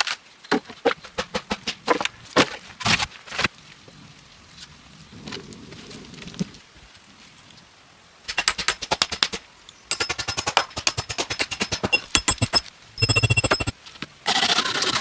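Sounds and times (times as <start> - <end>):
rapid sharp knocks: 8.3 - 13.7.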